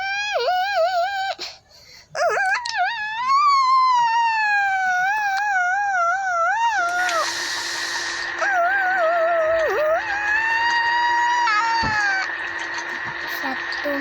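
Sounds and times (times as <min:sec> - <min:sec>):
baby crying: 0:08.4 - 0:12.4.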